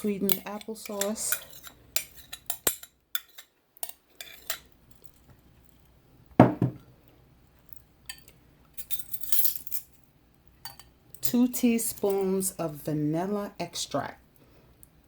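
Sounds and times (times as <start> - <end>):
utensils clinking against dishes: 0.0 - 4.6
dull thump: 6.4 - 6.8.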